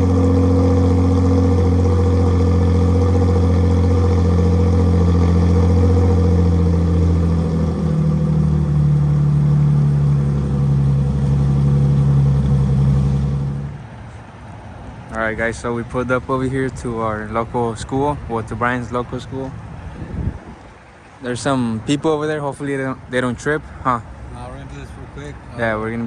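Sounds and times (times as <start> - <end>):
car engine running: 0.0 - 14.6.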